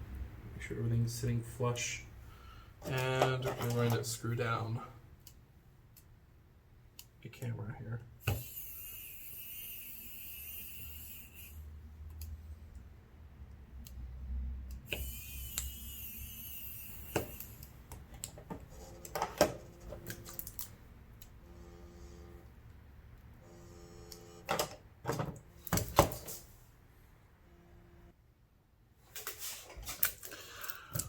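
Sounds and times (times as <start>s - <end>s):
electric screwdriver whirring: 14.9s - 17.7s.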